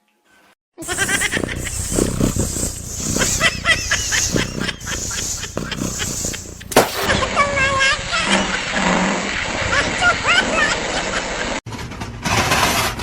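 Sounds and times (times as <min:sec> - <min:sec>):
animal chirping calls: 0:00.8 - 0:07.1.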